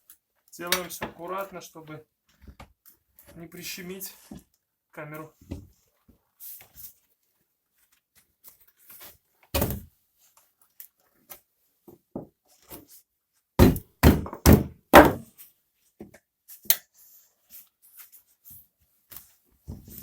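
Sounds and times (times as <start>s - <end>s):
hammer thuds on tire: 13.6s - 15.2s.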